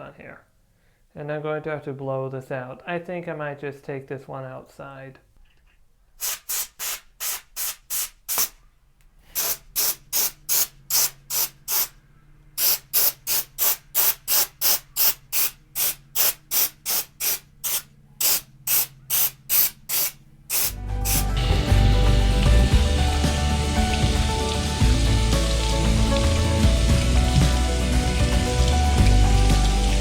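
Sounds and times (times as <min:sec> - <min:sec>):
compressed air bursts hissing: 0:06.2 - 0:08.6, 0:09.2 - 0:12.0, 0:12.6 - 0:28.5.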